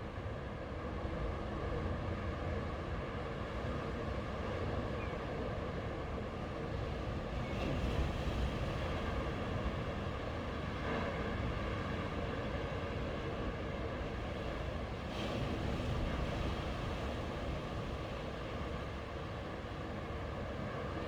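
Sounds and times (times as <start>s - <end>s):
sea waves washing ashore: 11.4s - 21.0s.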